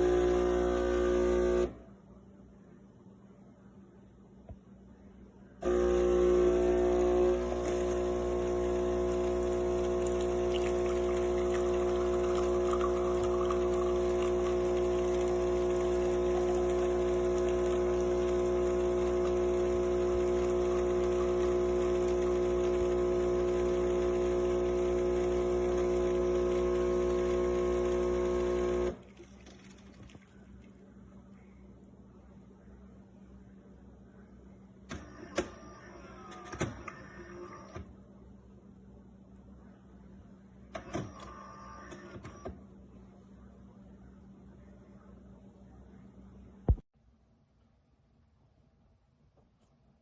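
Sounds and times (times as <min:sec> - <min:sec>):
espresso machine pump humming: 0:00.0 - 0:01.8, 0:05.6 - 0:29.0.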